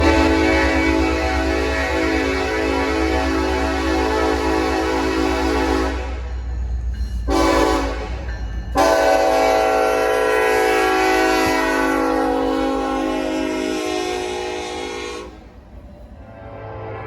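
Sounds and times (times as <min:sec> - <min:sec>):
steady low rumble: 0:00.0 - 0:04.5
locomotive horn chord: 0:00.0 - 0:06.3, 0:07.3 - 0:08.2, 0:08.8 - 0:15.4, 0:16.4 - 0:17.0.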